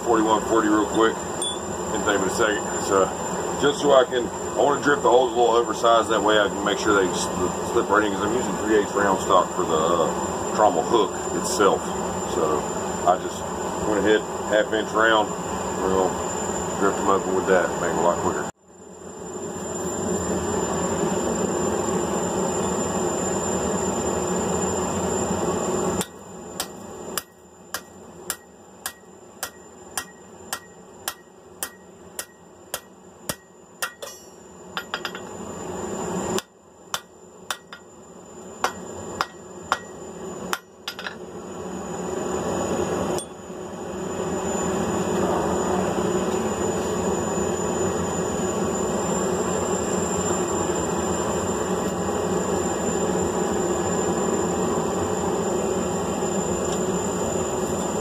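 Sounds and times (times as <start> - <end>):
hammer striking hot steel: 1.4 - 1.7, 26.0 - 35.4, 36.3 - 37.9, 38.6 - 41.2, 43.2 - 43.4.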